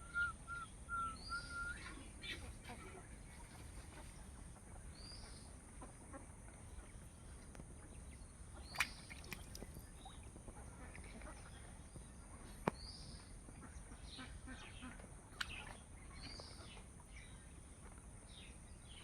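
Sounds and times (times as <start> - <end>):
faint bird chirps: 0.0 - 13.4.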